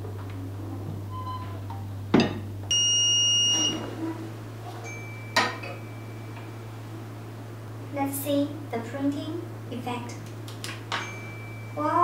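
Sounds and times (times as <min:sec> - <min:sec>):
low electrical hum: 0:00.0 - 0:12.0
high electronic beep: 0:02.7 - 0:03.8.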